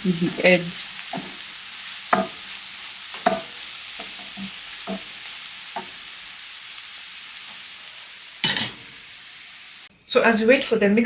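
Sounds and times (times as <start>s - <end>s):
food sizzling in a frying pan: 0.0s - 9.9s
utensil knocking against pan: 2.1s - 2.4s, 3.2s - 4.2s.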